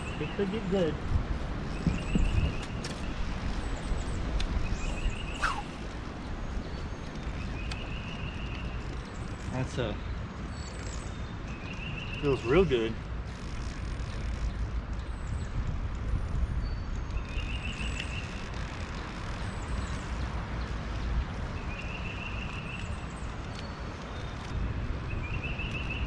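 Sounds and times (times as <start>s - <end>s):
wind on microphone: 0.0s - 9.4s, 13.6s - 21.8s
small animal trilling: 5.3s - 5.8s.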